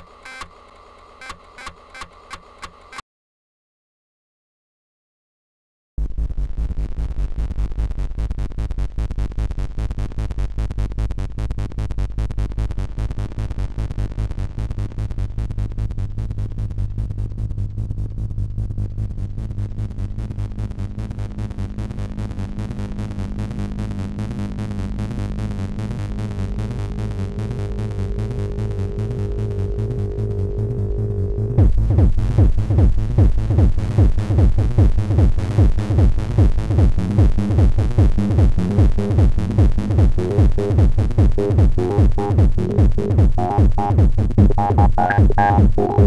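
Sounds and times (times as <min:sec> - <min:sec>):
electronic music with pulsing beat: 0:31.6 - 0:46.0.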